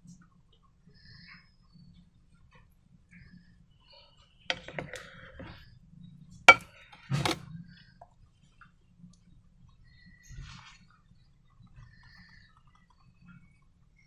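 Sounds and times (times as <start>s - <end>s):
clinks and knocks: 4.5s - 5.5s, 6.5s - 7.4s.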